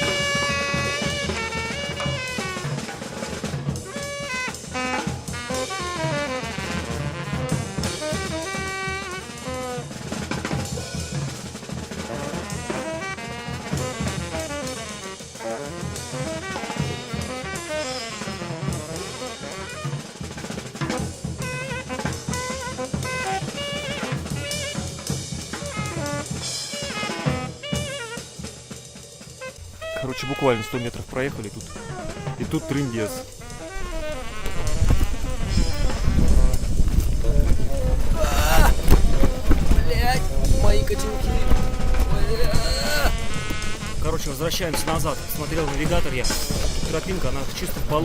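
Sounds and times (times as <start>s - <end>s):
up-tempo music with drums: 0.0s - 48.0s.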